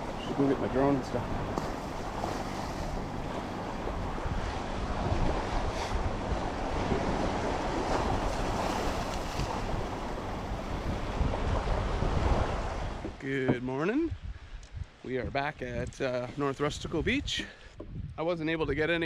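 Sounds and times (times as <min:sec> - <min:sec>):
ocean waves washing ashore: 0:00.0 - 0:13.5
wind rumbling on microphone: 0:00.0 - 0:19.0.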